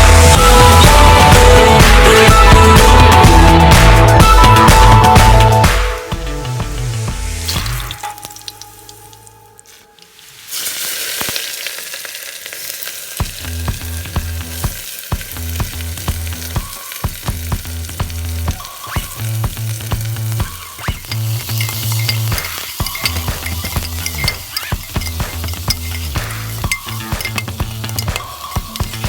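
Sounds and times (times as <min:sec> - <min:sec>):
food sizzling in hot oil: 0:06.7 - 0:29.0
spoon stirring and clicking on pan: 0:18.6 - 0:29.0.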